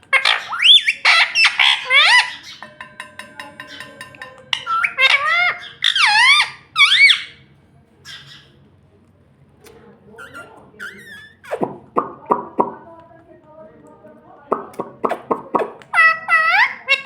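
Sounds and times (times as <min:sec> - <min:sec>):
parrot chattering and squawking: 0:00.0 - 0:07.4, 0:08.0 - 0:08.6, 0:10.2 - 0:12.8, 0:14.5 - 0:17.0.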